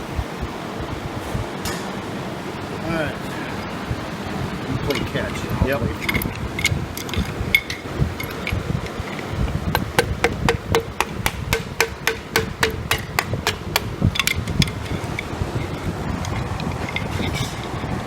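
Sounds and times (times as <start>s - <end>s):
ringing hammer blows on metal: 9.7s - 15.7s
light hammer taps: 9.8s - 14.9s.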